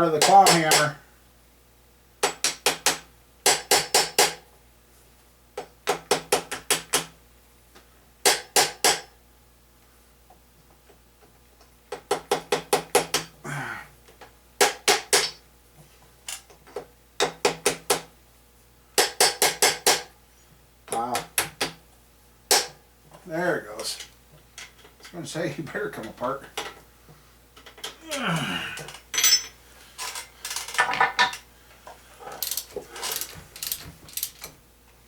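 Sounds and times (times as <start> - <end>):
metal part sliding and falling: 32.3 - 34.5.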